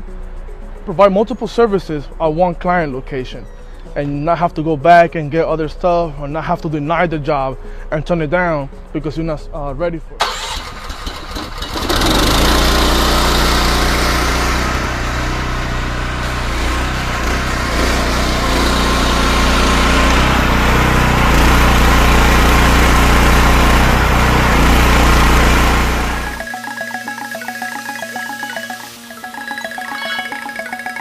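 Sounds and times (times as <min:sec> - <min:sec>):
small gas engine running: 0:10.2 - 0:26.4.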